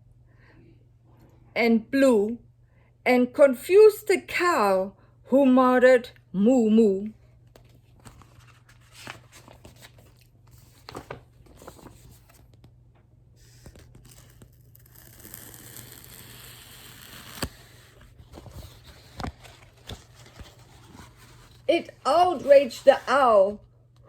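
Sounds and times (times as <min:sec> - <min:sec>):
paper pages rustling: 0:07.5 - 0:12.7, 0:13.4 - 0:23.6.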